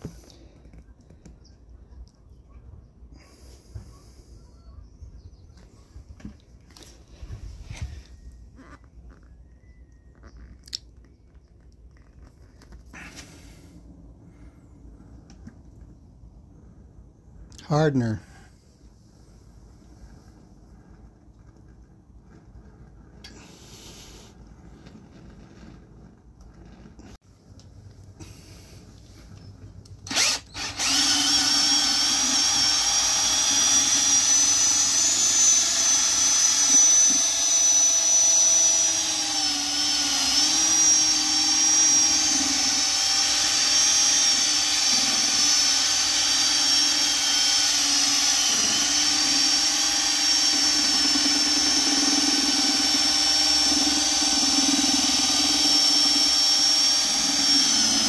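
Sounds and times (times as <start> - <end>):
power drill mixing paddle whine: 0.0 - 1.3, 5.5 - 10.7, 17.7 - 27.2, 28.2 - 58.0.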